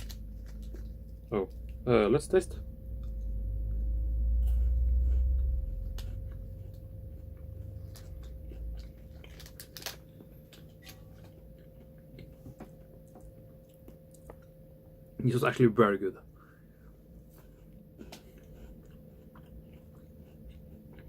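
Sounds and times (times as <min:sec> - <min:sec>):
wafer crunching while chewing: 0:00.0 - 0:01.8, 0:05.3 - 0:14.5
low rumble: 0:00.0 - 0:11.3
faint steady hum: 0:00.0 - 0:21.0.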